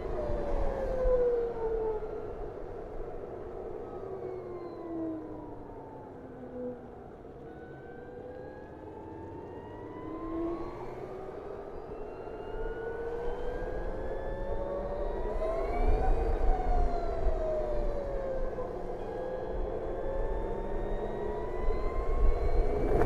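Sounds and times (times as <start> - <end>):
wind rumble: 21.5 - 23.0.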